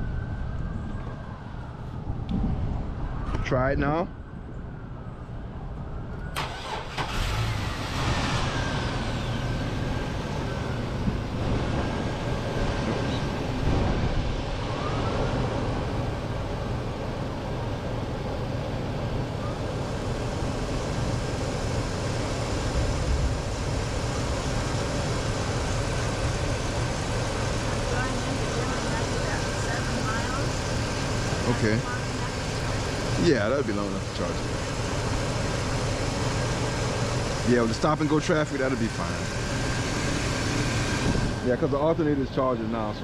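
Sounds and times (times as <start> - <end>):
car engine starting and running: 6.2 - 14.6, 18.5 - 42.8.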